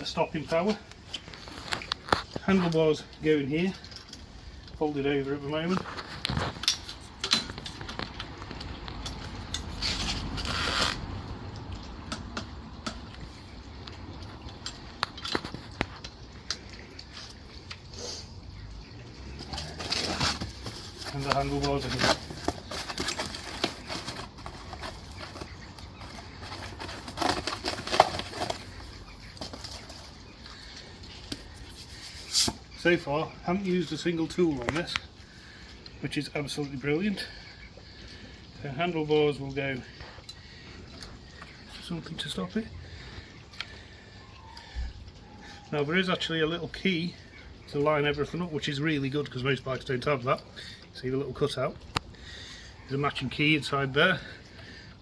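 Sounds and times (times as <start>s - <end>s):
scraping or rustling: 8.9s - 11.2s, 19.2s - 32.8s
bike parts clattering: 19.4s - 30.4s.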